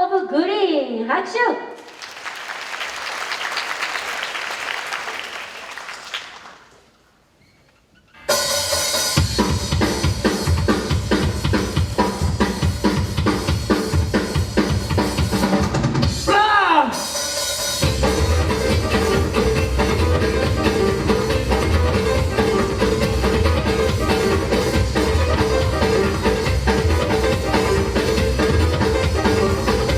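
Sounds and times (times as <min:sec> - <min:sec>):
audience applauding: 0:01.8 - 0:07.0.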